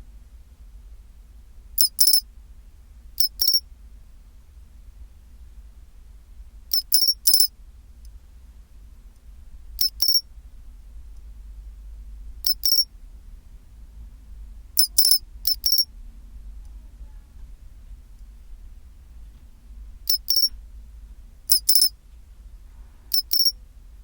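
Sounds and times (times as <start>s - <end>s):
cricket chirping: 1.8s - 2.2s, 3.2s - 3.6s, 6.7s - 7.5s, 9.8s - 10.2s, 12.4s - 12.9s, 14.8s - 15.9s, 20.1s - 20.5s, 21.5s - 21.9s, 23.1s - 23.5s.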